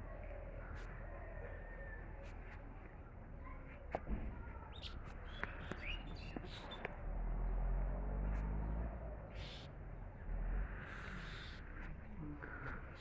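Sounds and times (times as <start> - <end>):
small birds chirping: 4.4 - 7.1, 9.2 - 13.0.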